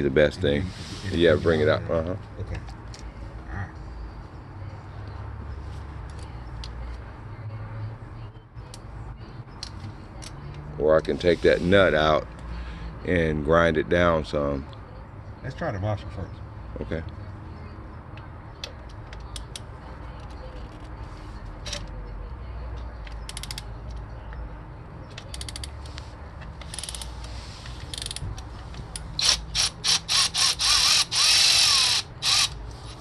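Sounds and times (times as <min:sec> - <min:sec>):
cordless power tool bursts: 0:29.2 - 0:32.5.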